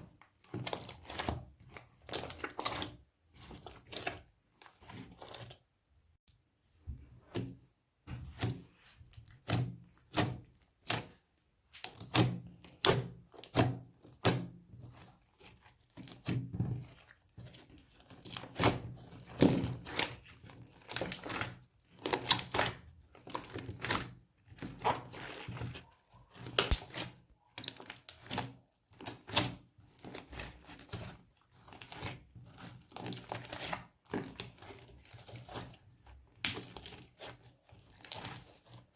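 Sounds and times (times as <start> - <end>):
slime squelching and popping: 9.1 - 38.8.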